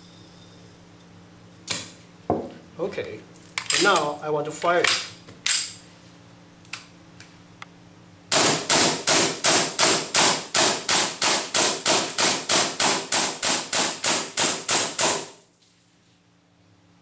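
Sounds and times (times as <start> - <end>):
airsoft pistol shots: 8.3 - 15.4.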